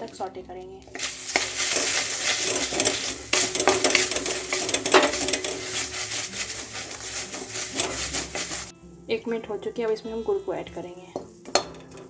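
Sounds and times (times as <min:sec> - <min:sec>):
paste sizzling in a pan: 0:01.0 - 0:08.7
utensil scraping and knocking pan: 0:01.0 - 0:08.7, 0:11.2 - 0:12.0.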